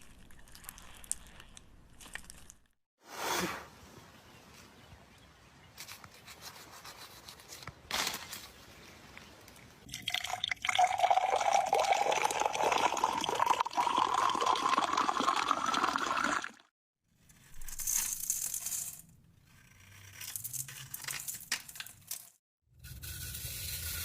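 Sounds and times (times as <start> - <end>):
liquid poured into a container: 0.0 - 2.5, 9.9 - 16.7.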